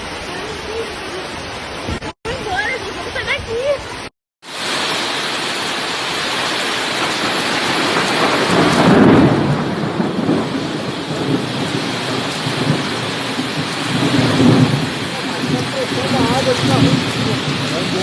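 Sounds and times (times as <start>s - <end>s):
heavy rain pouring: 0.0s - 18.0s.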